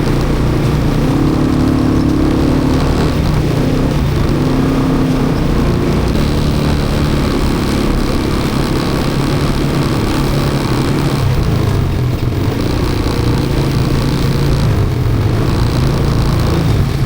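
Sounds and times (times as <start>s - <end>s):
atv engine running: 0.0s - 17.0s.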